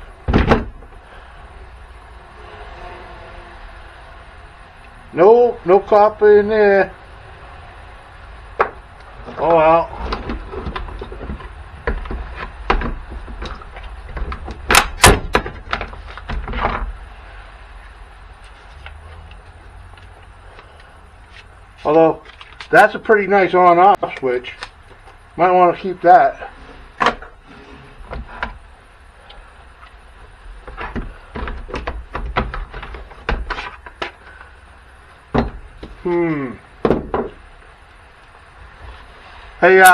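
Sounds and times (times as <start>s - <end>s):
plastic and metal parts knocking: 8.6s - 17.0s, 30.6s - 34.2s, 35.3s - 36.0s, 36.8s - 37.4s.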